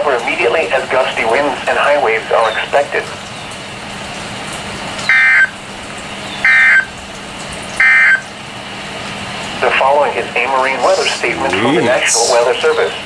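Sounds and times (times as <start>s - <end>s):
radio hiss: 9.6s - 13.0s.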